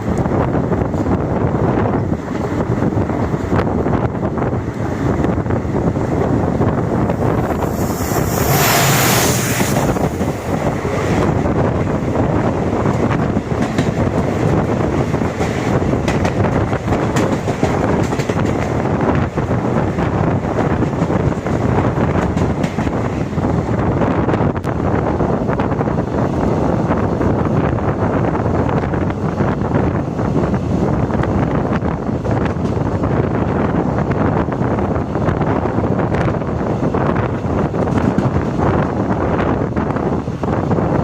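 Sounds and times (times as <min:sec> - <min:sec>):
train wheels rumbling on track: 0:00.0 - 0:41.0
wind buffeting microphone: 0:00.0 - 0:41.0
hissing rush: 0:06.8 - 0:12.2.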